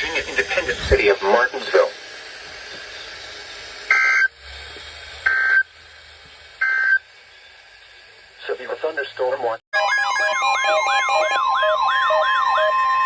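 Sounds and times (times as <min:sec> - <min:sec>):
buzzy digital data bursts: 0:09.8 - 0:13.0.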